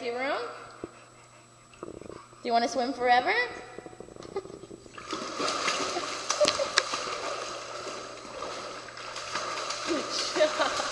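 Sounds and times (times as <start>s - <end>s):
water sloshing and splashing: 3.6s - 10.9s.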